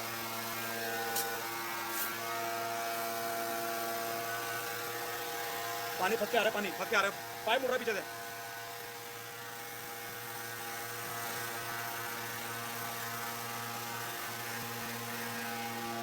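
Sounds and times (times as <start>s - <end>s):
pressure washer motor hum: 2.9s - 8.3s.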